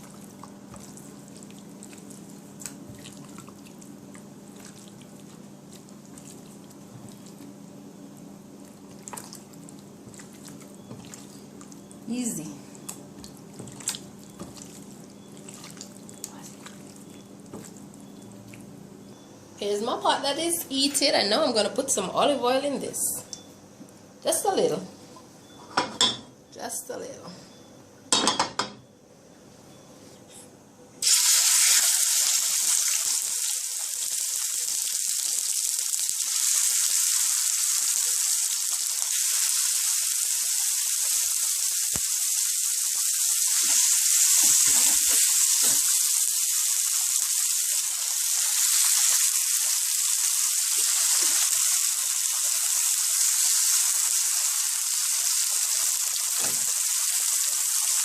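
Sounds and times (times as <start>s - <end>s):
chicken sizzling in oil: 31.0s - 58.0s.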